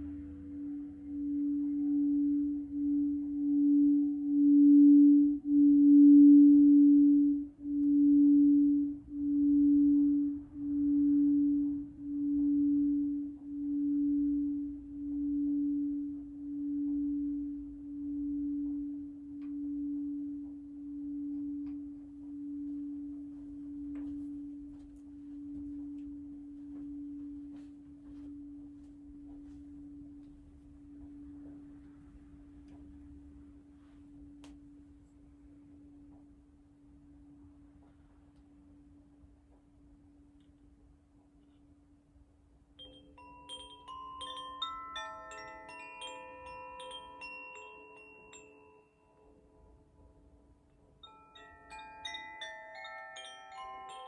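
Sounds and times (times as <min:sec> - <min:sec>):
crystal singing bowl note: 0:00.0 - 0:34.4.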